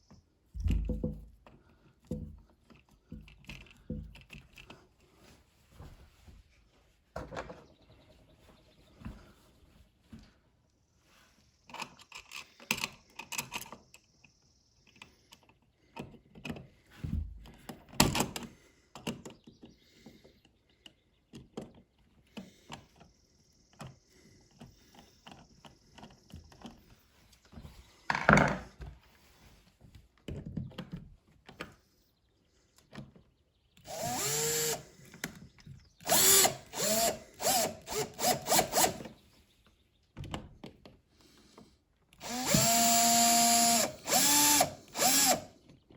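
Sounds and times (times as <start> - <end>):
power drill driving screws: 33.9 - 35.0, 36.0 - 39.1, 42.2 - 45.5.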